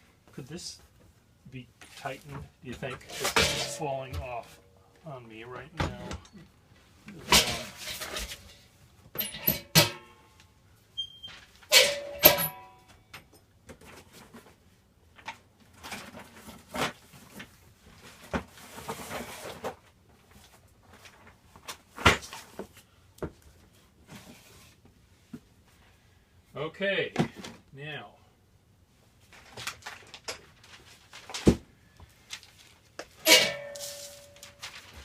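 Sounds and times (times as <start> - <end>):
tools and hardware clattering: 2.7 - 4.6, 7.1 - 10.2, 11.7 - 13.3, 33.2 - 35.0
short metallic ring: 11.7 - 12.8, 33.2 - 34.7.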